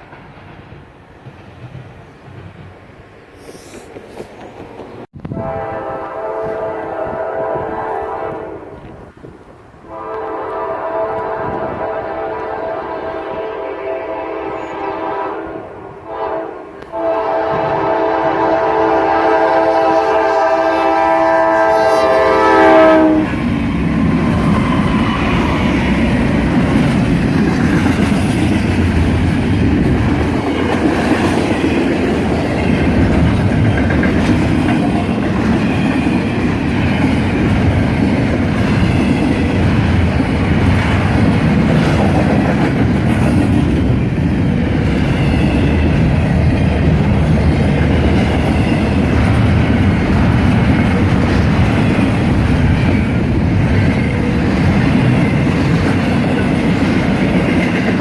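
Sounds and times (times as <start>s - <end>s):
train rumbling past: 0.0s - 58.0s
locomotive horn blasts: 5.2s - 8.8s, 9.9s - 23.4s.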